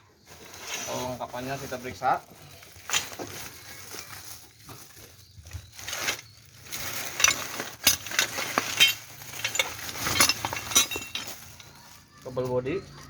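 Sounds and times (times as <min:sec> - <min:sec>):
rustling: 0:00.1 - 0:13.0
rummaging through loose parts: 0:01.7 - 0:12.5
metal parts clinking: 0:05.8 - 0:12.0.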